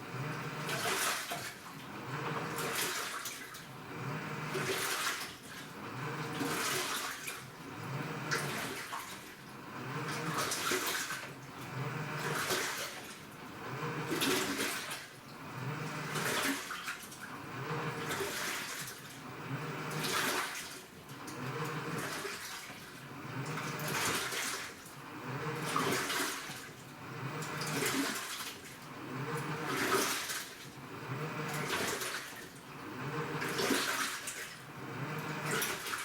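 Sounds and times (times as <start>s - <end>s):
low motor hum: 0.0s - 0.9s, 1.8s - 2.7s, 3.7s - 4.7s, 5.7s - 6.6s, 7.6s - 8.6s, 9.6s - 10.6s, 11.4s - 12.5s, 13.3s - 14.5s, 15.3s - 16.4s, 17.4s - 18.3s, 19.2s - 20.2s, 21.1s - 22.2s, 23.1s - 24.2s, 25.0s - 26.1s, 26.8s - 28.0s, 28.8s - 30.0s, 30.7s - 32.0s, 32.7s - 33.8s, 34.7s - 35.9s
water sloshing in washing machine: 0.0s - 36.0s.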